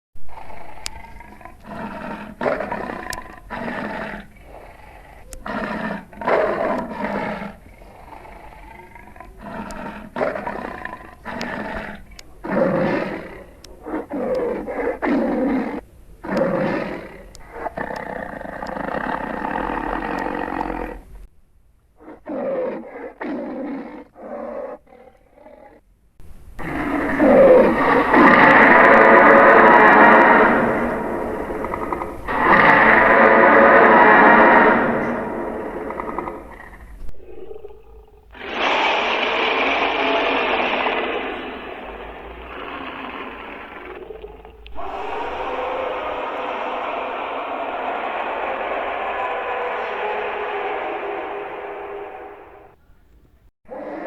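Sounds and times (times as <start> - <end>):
dragon roars and growls: 26.6 - 37.7, 38.4 - 52.8.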